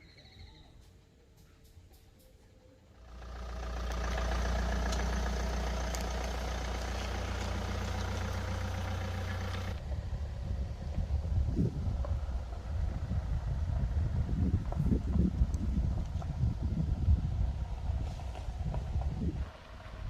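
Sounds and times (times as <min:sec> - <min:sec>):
engine humming: 0:00.9 - 0:20.0
wind buffeting microphone: 0:09.8 - 0:20.0.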